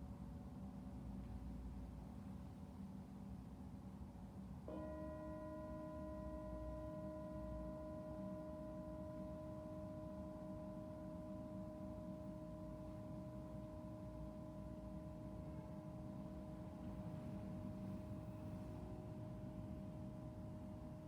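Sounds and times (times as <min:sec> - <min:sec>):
singing bowl ringing: 0:04.7 - 0:21.0.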